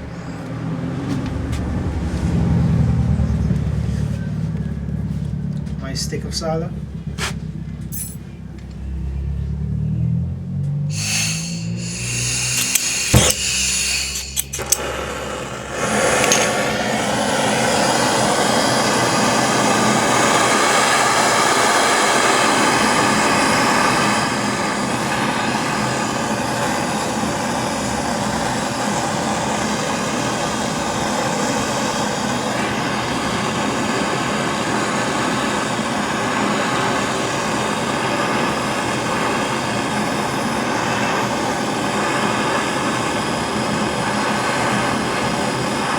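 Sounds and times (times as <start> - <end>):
igniter clicks: 10.6 - 16.9
gas torch flame hissing: 10.6 - 45.9.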